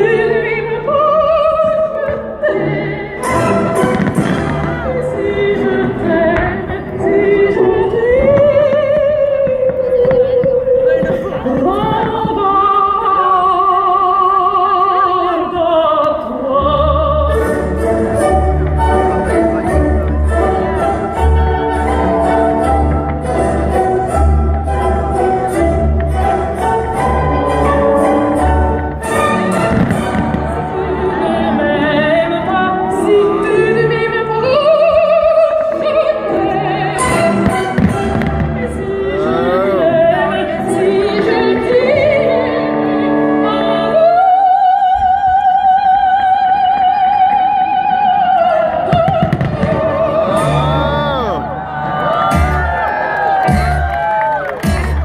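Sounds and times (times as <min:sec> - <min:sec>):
operatic singing: 0:00.0 - 0:52.8
orchestral music: 0:02.4 - 0:09.2, 0:16.6 - 0:34.7, 0:49.1 - 0:51.6.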